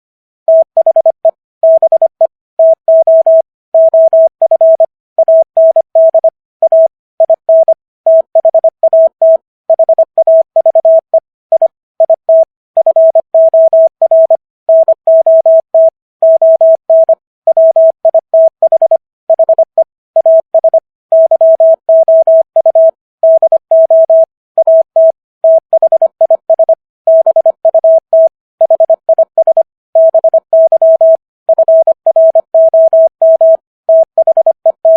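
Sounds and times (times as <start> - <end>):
morse code tone: 0.5 - 34.9.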